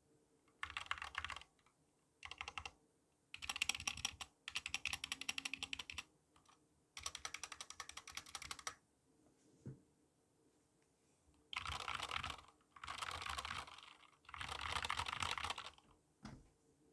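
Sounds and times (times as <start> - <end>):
mechanical keyboard typing: 0.5 - 1.5, 2.2 - 2.7, 3.4 - 8.8, 11.5 - 15.8.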